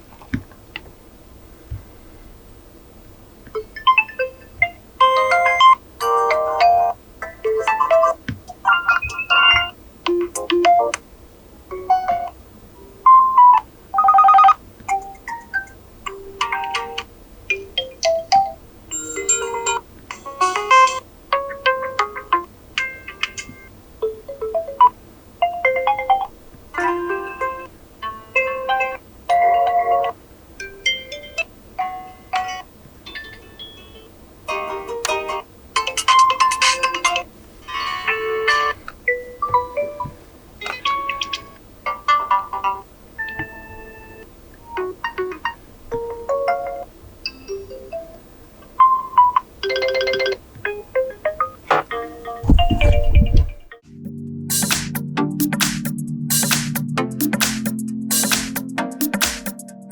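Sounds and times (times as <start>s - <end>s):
chiming phone alarm tones: 14.0s - 14.6s, 49.0s - 50.4s
phone alarm chime: 18.9s - 19.8s
tone with heavy low beat: 52.4s - 59.9s.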